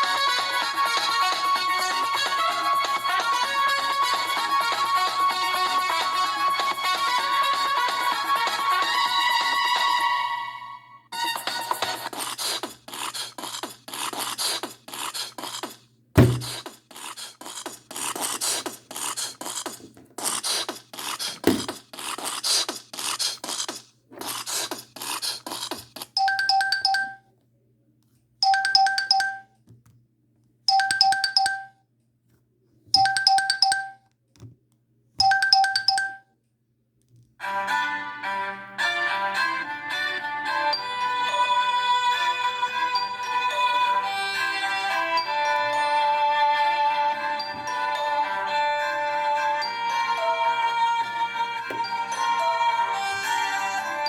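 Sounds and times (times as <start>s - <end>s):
rhythmic electronic ringtone: 35.2s - 36.2s, 40.5s - 54.0s
phone ring of pure tones: 40.5s - 54.0s.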